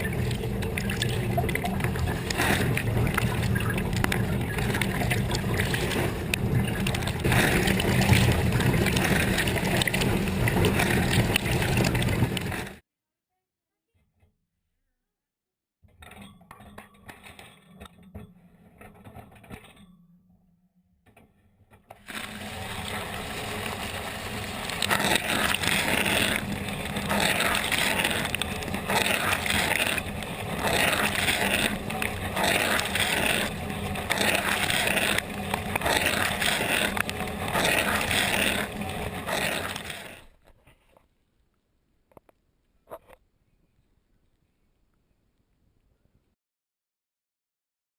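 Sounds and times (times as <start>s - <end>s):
dishwasher motor hum: 0.0s - 12.8s, 22.1s - 40.2s
water spray pelting housing: 0.0s - 12.8s, 22.1s - 40.2s.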